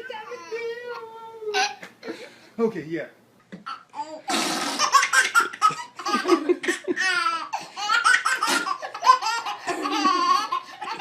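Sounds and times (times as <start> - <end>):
baby giggling: 3.7 - 11.0.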